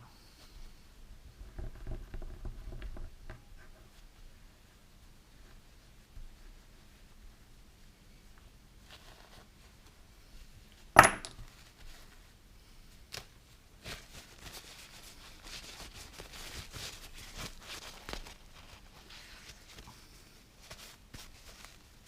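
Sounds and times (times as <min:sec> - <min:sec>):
soft rubbing from wiping parts: 0:03.5 - 0:10.8, 0:11.6 - 0:22.0
hard piece set down: 0:11.0 - 0:11.4.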